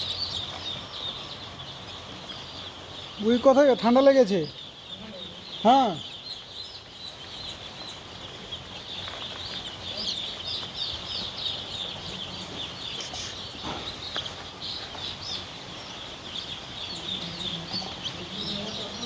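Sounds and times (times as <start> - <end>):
chicks peeping: 0.0 - 19.0.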